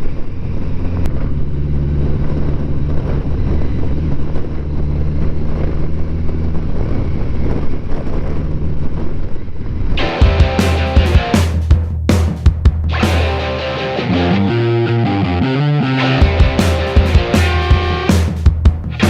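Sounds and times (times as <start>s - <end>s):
wind noise on microphone: 0.0s - 11.3s
motorcycle engine cruising: 0.0s - 19.0s
rock music with electric guitar: 10.0s - 11.8s, 12.8s - 19.0s.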